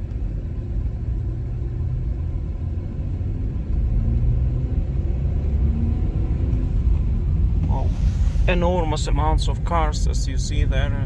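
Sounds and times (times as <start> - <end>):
road and engine rumble in car: 0.0 - 11.0.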